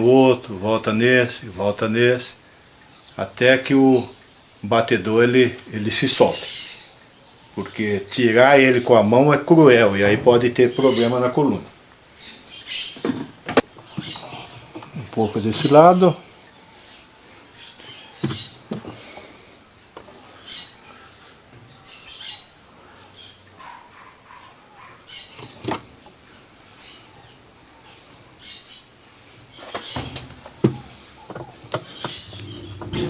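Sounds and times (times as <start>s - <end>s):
metal on plastic squeaks and clicks: 17.9s - 18.9s, 25.2s - 26.2s, 29.6s - 33.0s.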